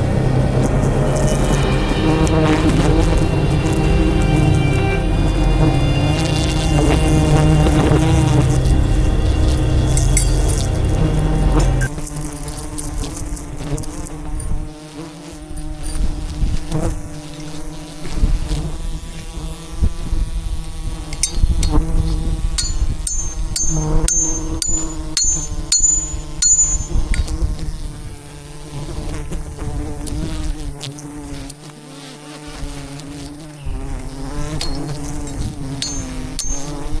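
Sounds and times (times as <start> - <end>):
bees buzzing: 0.0 - 37.0
high short double chirp: 23.1 - 27.2.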